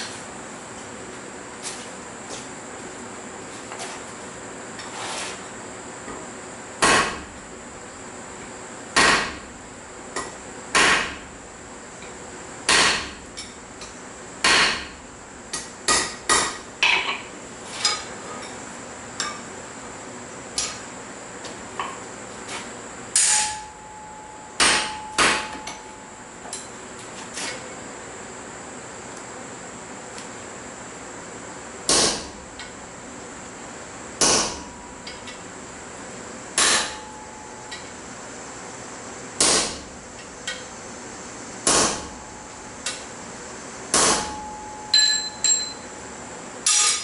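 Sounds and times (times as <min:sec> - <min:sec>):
hammer striking steel on anvil: 0:12.7 - 0:13.5, 0:14.4 - 0:14.9, 0:23.2 - 0:26.0, 0:36.6 - 0:37.9, 0:43.9 - 0:45.8, 0:46.6 - 0:47.0
faint high whine: 0:23.3 - 0:26.6, 0:36.9 - 0:38.6
short ringing tone: 0:23.6 - 0:26.3, 0:44.4 - 0:46.1.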